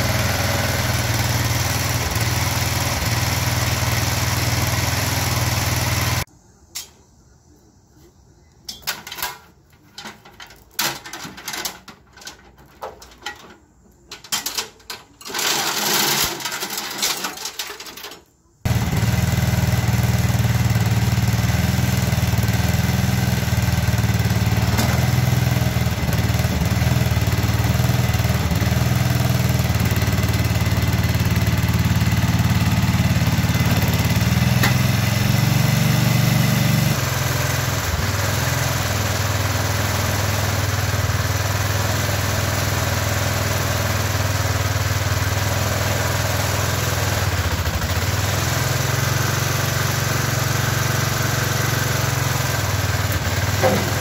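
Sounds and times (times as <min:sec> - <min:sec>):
engine running: 0:00.0 - 0:06.3, 0:18.7 - 0:54.0.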